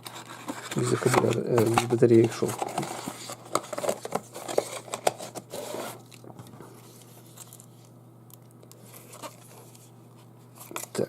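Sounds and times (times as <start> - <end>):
packaging rustling: 0.0 - 7.8
low steady hum: 0.0 - 11.0.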